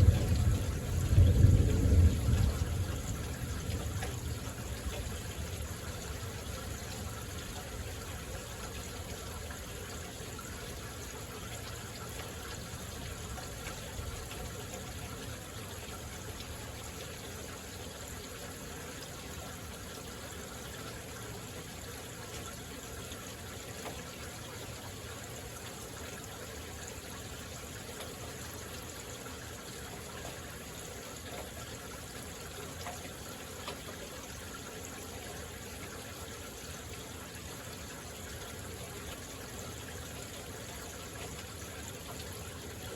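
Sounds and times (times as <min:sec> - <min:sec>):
heavy rain falling: 0:00.0 - 0:16.9.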